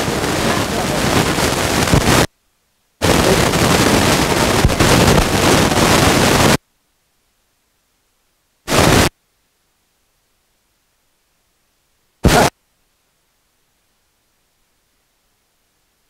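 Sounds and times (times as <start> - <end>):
wind blasting microphone: 0.0 - 2.3, 3.0 - 6.6.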